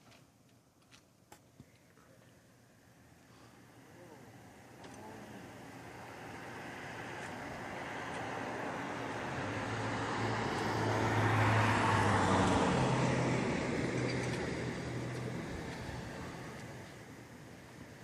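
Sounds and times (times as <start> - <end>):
car driving past: 4.4 - 16.9.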